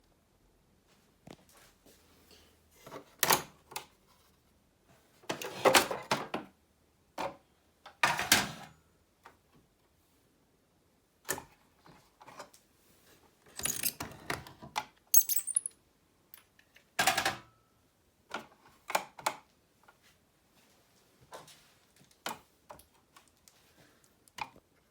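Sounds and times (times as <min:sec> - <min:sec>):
plastic and metal parts clattering: 0:13.6 - 0:14.1.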